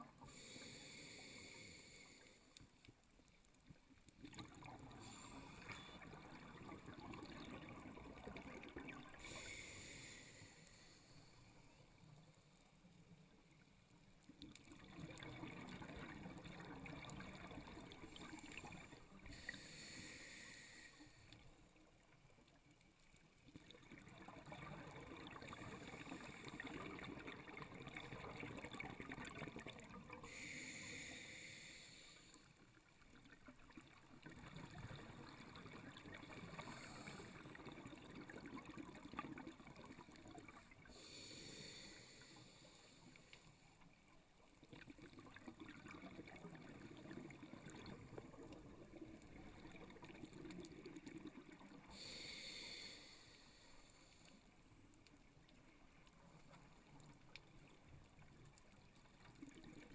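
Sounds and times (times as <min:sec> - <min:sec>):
regulator inhalation hiss: 0:00.2 - 0:02.5, 0:09.2 - 0:11.5, 0:19.3 - 0:21.3, 0:30.2 - 0:32.4, 0:40.9 - 0:43.3, 0:51.9 - 0:54.3.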